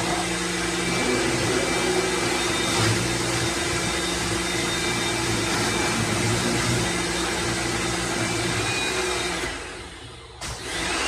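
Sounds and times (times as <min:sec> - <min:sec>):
pressure washer motor humming: 0:00.0 - 0:11.0.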